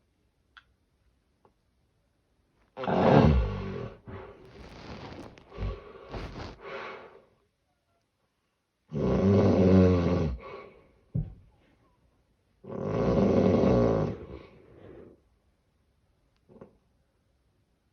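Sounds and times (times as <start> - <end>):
person snoring heavily: 2.8 - 6.8
ragged breath: 4.0 - 7.2
short snort: 4.1 - 7.1.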